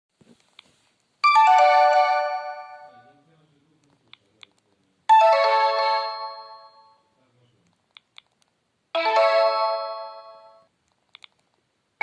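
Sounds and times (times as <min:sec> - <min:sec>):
phone chime falling bell notes: 0:05.1 - 0:07.0.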